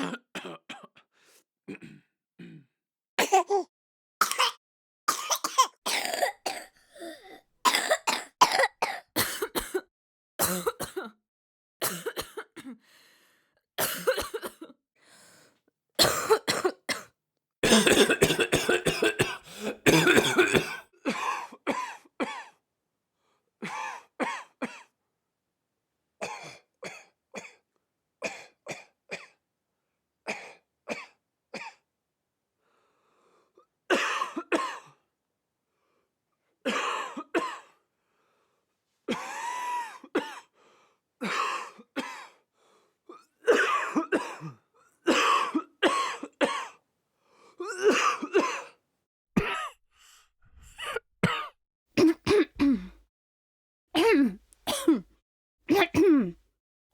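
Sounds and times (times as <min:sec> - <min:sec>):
person coughing: 0:00.0 - 0:01.0, 0:01.7 - 0:09.8, 0:10.4 - 0:11.1, 0:11.8 - 0:12.8, 0:13.8 - 0:14.7, 0:16.0 - 0:22.5, 0:43.1 - 0:46.8, 0:47.6 - 0:48.8, 0:50.7 - 0:53.0, 0:54.0 - 0:55.1, 0:55.7 - 0:56.4.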